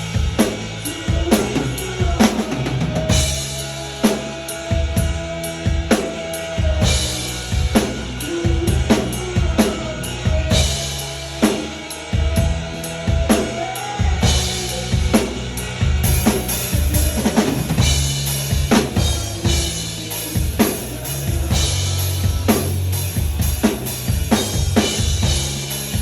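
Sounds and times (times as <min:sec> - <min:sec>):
backing track with melody: 0:00.0 - 0:26.0
drum kit playing: 0:00.0 - 0:26.0.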